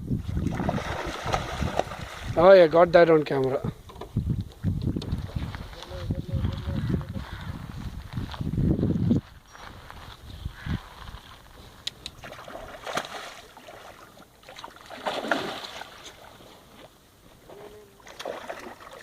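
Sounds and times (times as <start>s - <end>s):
water splashing and sloshing: 0.2s - 2.6s, 11.0s - 19.0s.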